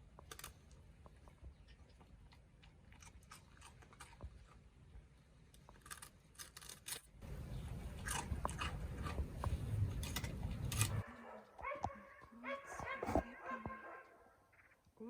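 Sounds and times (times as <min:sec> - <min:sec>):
crunching clicks: 0:00.0 - 0:01.3, 0:05.5 - 0:12.0
low steady rumble: 0:07.2 - 0:11.0.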